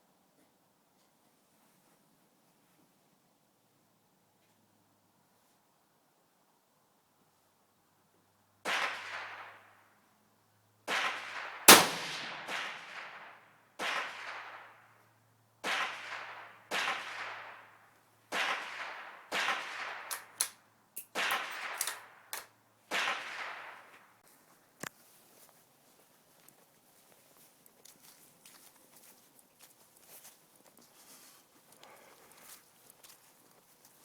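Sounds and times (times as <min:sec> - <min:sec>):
gunshots echoing: 0:10.9 - 0:14.8, 0:15.6 - 0:17.7, 0:18.3 - 0:20.5, 0:21.1 - 0:24.1.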